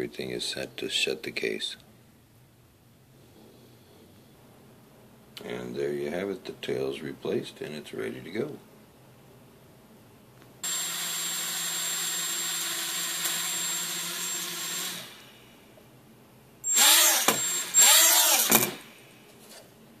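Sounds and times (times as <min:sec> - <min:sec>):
mini quadcopter motors whirring: 0:16.7 - 0:18.8.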